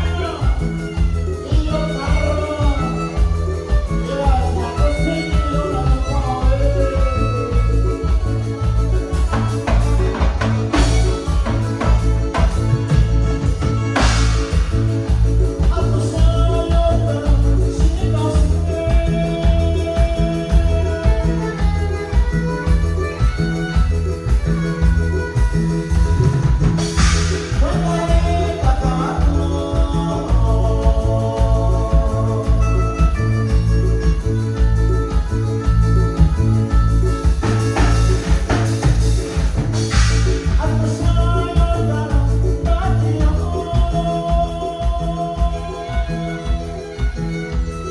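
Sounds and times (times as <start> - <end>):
heavy bass beat: 0.0 - 47.9
live band instrumental music: 0.0 - 47.9
cymbal crash: 26.9 - 27.8.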